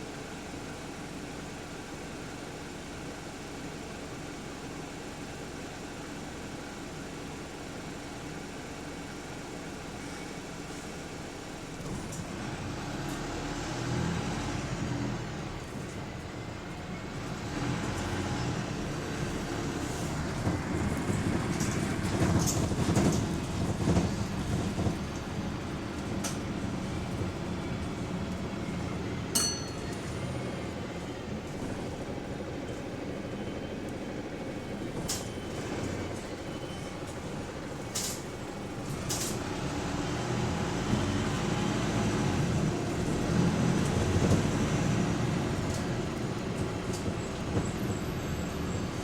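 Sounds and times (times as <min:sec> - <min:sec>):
bus engine: 0:00.0 - 0:49.0
road noise: 0:11.3 - 0:49.0.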